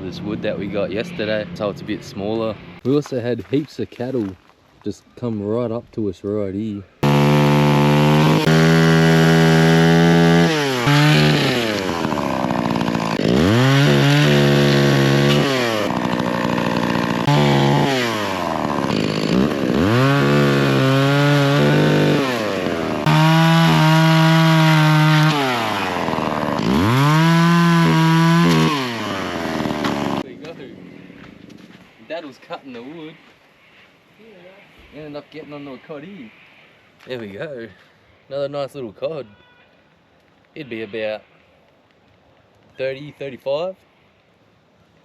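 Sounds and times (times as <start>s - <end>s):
chainsaw cutting wood: 7.0s - 30.3s.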